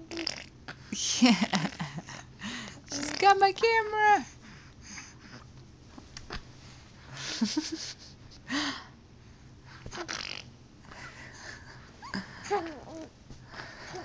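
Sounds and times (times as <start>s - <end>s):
baby breathy puffs and grunts: 9.7s - 10.4s, 11.0s - 14.0s.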